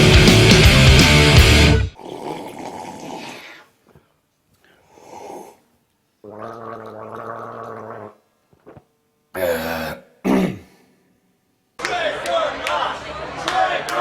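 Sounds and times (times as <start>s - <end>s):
person gargling: 1.9s - 3.7s, 6.2s - 8.8s, 9.4s - 10.8s.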